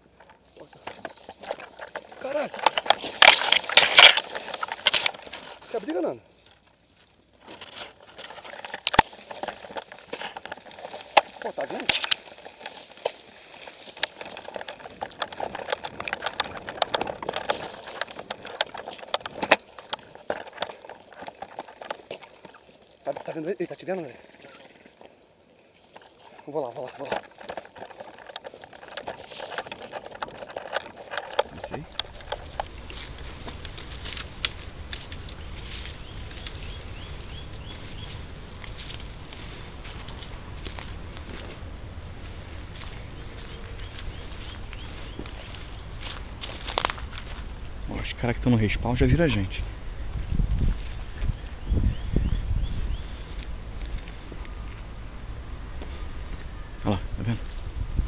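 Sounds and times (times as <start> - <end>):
rustling of movement: 0.0 - 58.0
sharp clicks: 27.1 - 57.6
bird chirping: 31.4 - 58.0
steady low rumble: 31.5 - 58.0.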